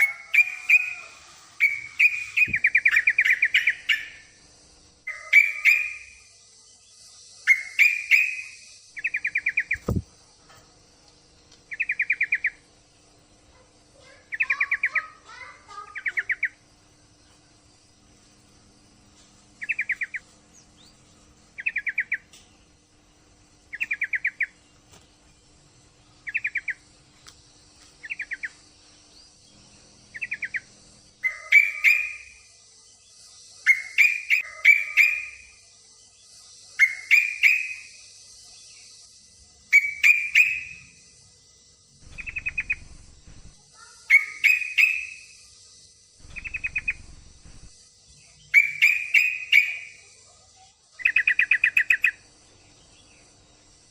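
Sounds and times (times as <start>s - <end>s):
bird trills: 0.0s - 4.4s, 5.1s - 10.0s, 11.7s - 12.7s, 14.0s - 16.7s, 19.6s - 22.4s, 23.6s - 24.7s, 26.2s - 26.9s, 28.0s - 38.9s, 39.7s - 41.0s, 42.0s - 45.6s, 46.2s - 50.3s, 51.0s - 53.5s
bubbly bird phrases with sharp clicks: 14.0s - 16.6s.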